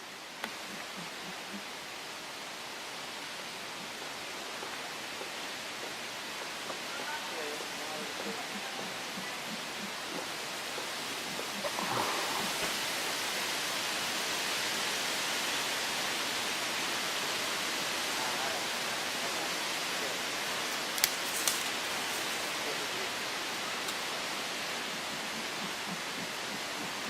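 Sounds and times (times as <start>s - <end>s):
steady hiss: 0.0s - 27.0s
sharp clicks: 20.8s - 22.3s.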